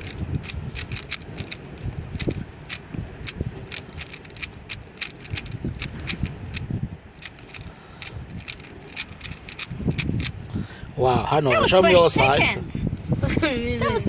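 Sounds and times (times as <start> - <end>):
puzzle cube twisting clicks: 0.0 - 10.4.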